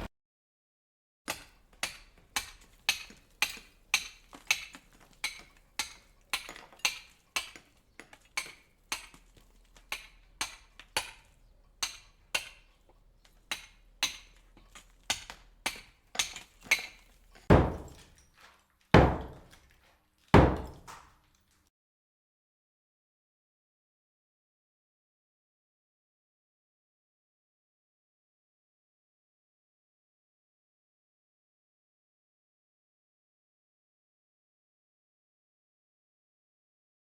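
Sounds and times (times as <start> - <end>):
hammer strikes: 17.5 - 18.0, 19.0 - 19.5, 20.4 - 21.0
heavy thuds: 17.5 - 18.0.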